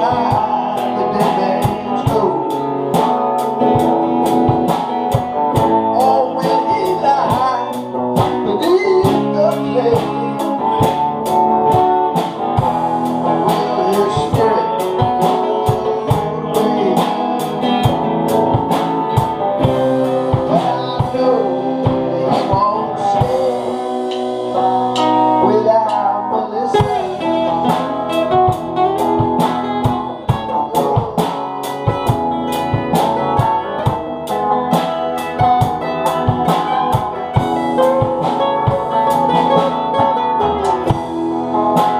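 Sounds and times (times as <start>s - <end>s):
blues song with guitar: 0.0s - 41.9s
person singing: 0.0s - 41.9s
steady drum beat: 0.0s - 41.9s.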